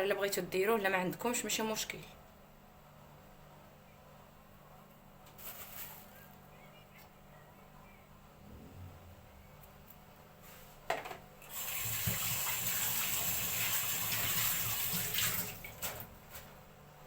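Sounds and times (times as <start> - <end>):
kitchen tap running: 11.4 - 16.1.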